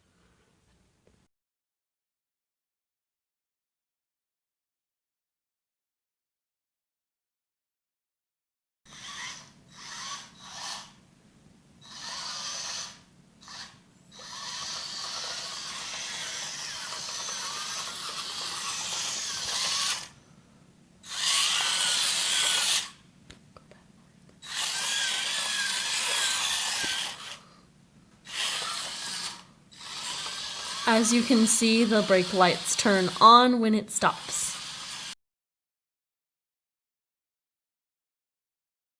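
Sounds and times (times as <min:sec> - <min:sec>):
toy car motors whirring: 0:08.9 - 0:11.0, 0:11.8 - 0:20.2, 0:21.0 - 0:23.0, 0:24.4 - 0:27.4, 0:28.2 - 0:35.2.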